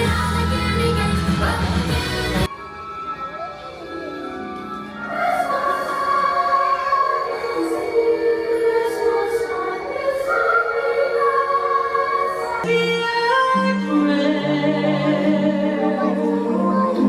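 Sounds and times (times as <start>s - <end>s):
choir singing long held notes: 4.8s - 17.0s.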